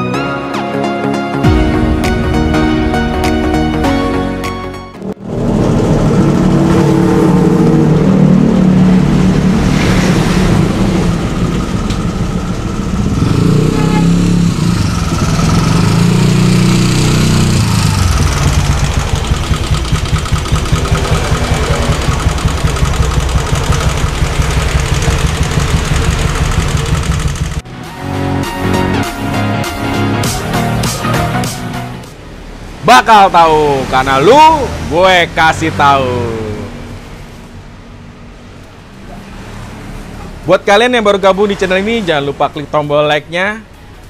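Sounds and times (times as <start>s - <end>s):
motorcycle engine revving: 5.0s - 27.6s.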